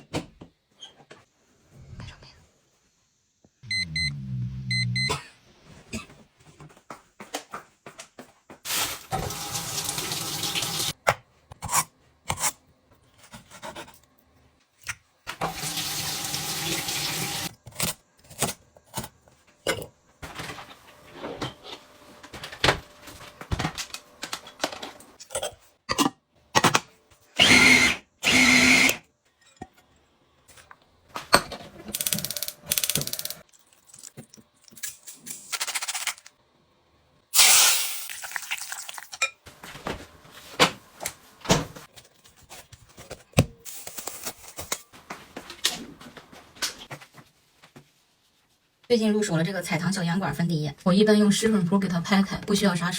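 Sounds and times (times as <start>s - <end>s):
kitchen tap running: 9.0s - 11.0s, 15.4s - 17.5s.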